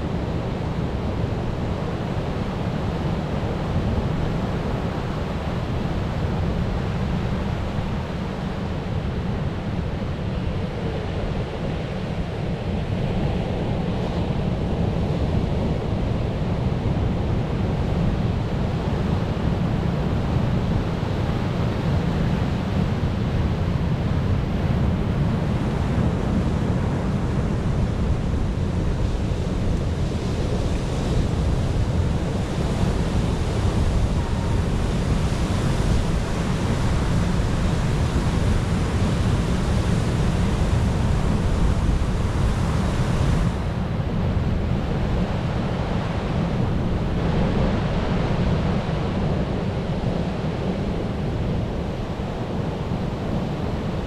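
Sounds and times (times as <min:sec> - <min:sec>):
deep rumble of surf: 0:00.0 - 0:54.0
sea waves surging on shore: 0:17.6 - 0:54.0.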